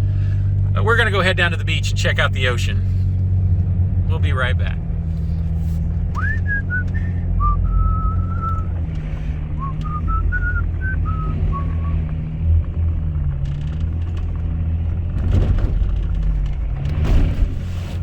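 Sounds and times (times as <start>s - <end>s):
vehicle engine and tyres droning: 0.0s - 18.0s
person whistling a tune: 6.2s - 8.7s, 9.6s - 12.0s.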